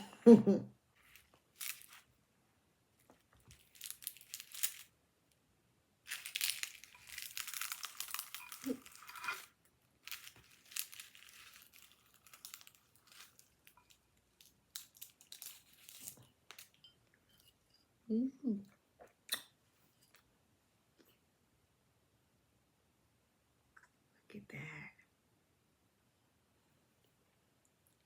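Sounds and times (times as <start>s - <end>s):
baked pastry layers crackling: 1.0s - 2.1s, 3.1s - 4.9s, 6.1s - 16.9s.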